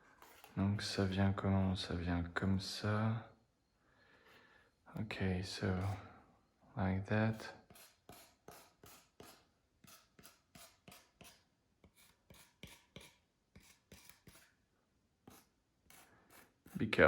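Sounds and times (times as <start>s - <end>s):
knife blade scraping foam: 0.0s - 0.6s, 5.8s - 6.0s, 7.3s - 14.6s, 15.3s - 16.9s.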